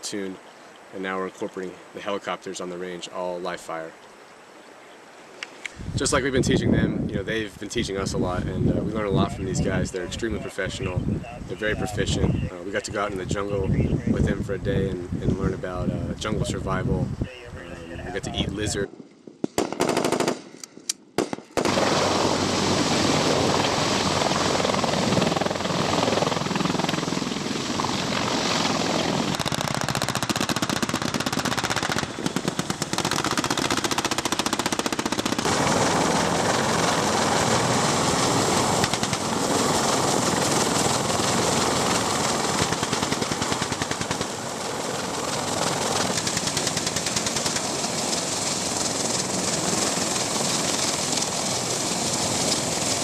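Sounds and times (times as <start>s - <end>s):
rifle shots: 19.4s - 20.5s, 21.2s - 22.2s, 29.3s - 35.7s
continuous machine-gun fire: 19.6s - 20.4s, 21.2s - 22.3s, 28.2s - 53.0s.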